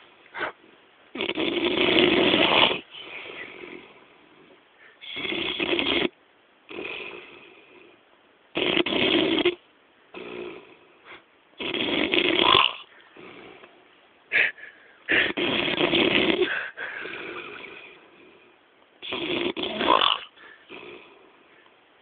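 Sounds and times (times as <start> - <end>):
quiet breaths: 0.0 - 1.2, 2.1 - 5.6, 6.6 - 8.3, 10.1 - 11.6, 12.3 - 22.0
man snoring heavily: 1.2 - 3.9, 5.0 - 6.1, 6.7 - 7.8, 8.6 - 9.6, 11.6 - 13.6, 15.1 - 18.0, 19.0 - 21.2.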